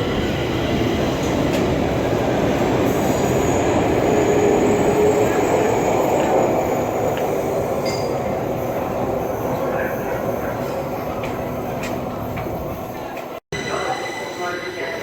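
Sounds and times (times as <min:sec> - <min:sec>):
metro train rumbling on rails: 0:00.0 - 0:15.0.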